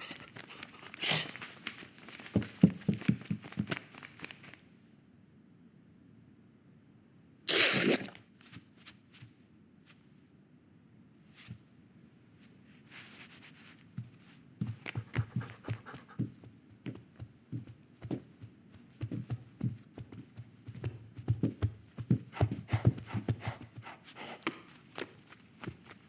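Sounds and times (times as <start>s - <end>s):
soft thumps and taps: 2.2s - 4.4s, 13.9s - 23.4s.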